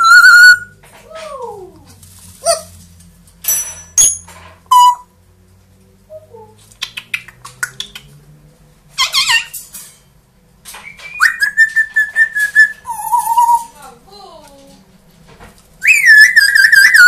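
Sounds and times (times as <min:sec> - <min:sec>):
parrot call: 0:00.0 - 0:00.7, 0:04.7 - 0:05.1, 0:09.0 - 0:09.6, 0:15.8 - 0:17.0
parrot squawks: 0:00.0 - 0:00.7, 0:09.0 - 0:09.6, 0:15.8 - 0:17.0
parrot long whistle: 0:00.0 - 0:00.8, 0:04.7 - 0:05.1, 0:10.8 - 0:13.7, 0:15.8 - 0:17.0.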